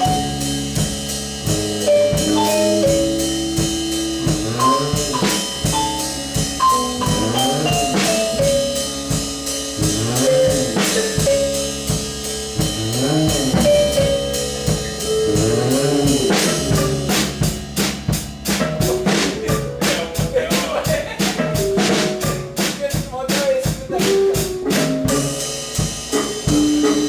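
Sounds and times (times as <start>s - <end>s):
drum kit steady beat: 0.0s - 27.0s
instrument swooping in pitch: 1.8s - 9.2s, 9.8s - 17.5s, 24.6s - 27.0s.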